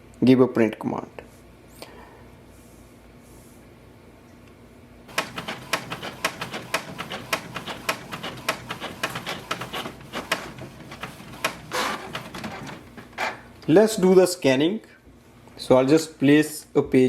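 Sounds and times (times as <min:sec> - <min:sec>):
printer clicking and clacking: 0:05.1 - 0:13.3.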